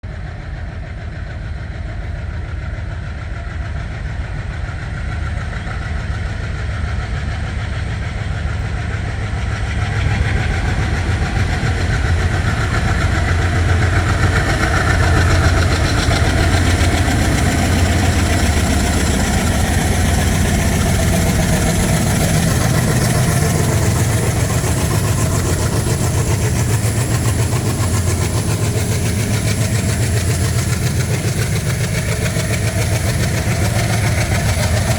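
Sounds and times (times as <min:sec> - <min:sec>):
goods train rumbling on track: 0:00.0 - 0:34.9.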